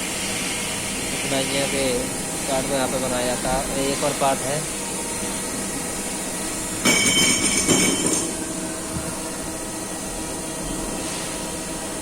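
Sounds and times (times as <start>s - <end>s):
cnc machinery droning: 0.0s - 12.0s.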